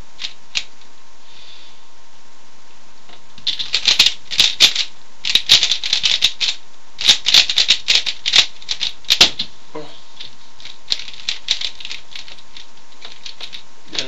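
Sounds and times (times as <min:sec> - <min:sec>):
puzzle cube plastic clacking: 0:03.4 - 0:09.5, 0:10.2 - 0:14.0.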